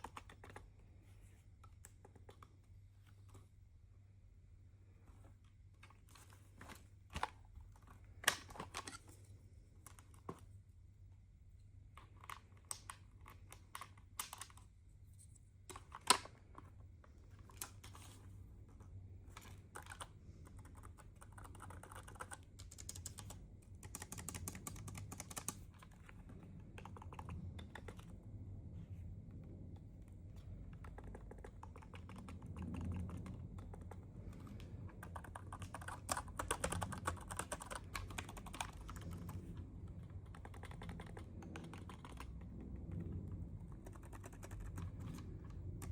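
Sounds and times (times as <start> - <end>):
faint low hum: 0.0 - 45.9
keyboard keys clicking: 19.4 - 28.1, 30.8 - 39.4, 40.0 - 42.5, 43.6 - 45.2.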